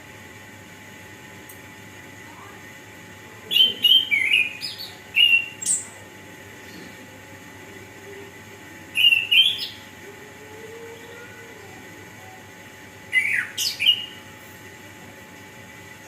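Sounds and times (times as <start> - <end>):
thrush singing whistled notes: 3.5 - 6.0, 8.9 - 9.9, 13.1 - 14.2.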